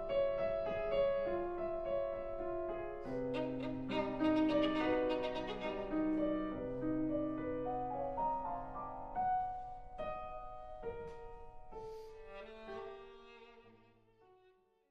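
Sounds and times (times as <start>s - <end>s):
piano notes: 0.0s - 14.4s
bowed strings: 3.0s - 7.6s.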